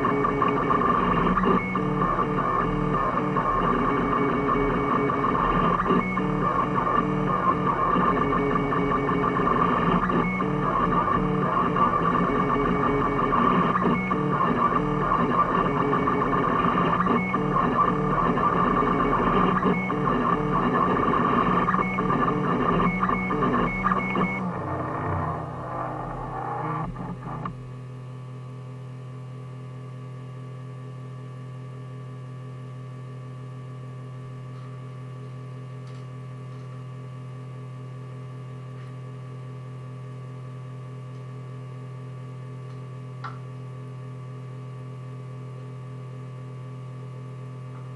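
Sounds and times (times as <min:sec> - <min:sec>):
small click: 0:35.8 - 0:36.7, 0:42.7 - 0:43.5.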